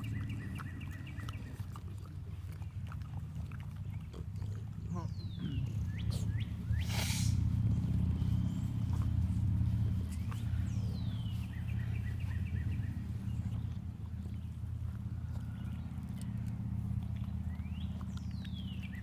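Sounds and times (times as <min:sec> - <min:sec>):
bird chirps: 0:00.0 - 0:01.6, 0:04.9 - 0:07.1, 0:17.2 - 0:19.0
dog chewing and snuffling: 0:00.0 - 0:19.0
grass rustle: 0:05.8 - 0:18.8.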